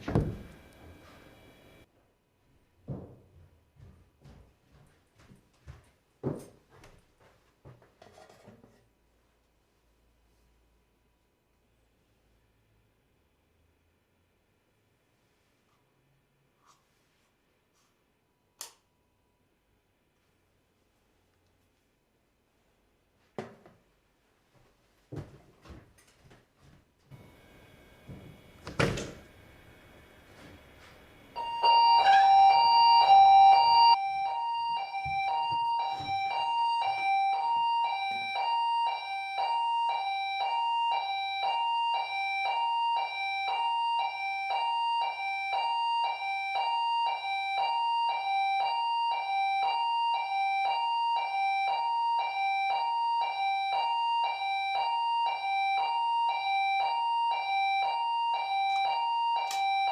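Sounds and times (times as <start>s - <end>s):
click: 18.6s - 18.8s
electronic alarm high-low beeping: 31.4s - 59.9s.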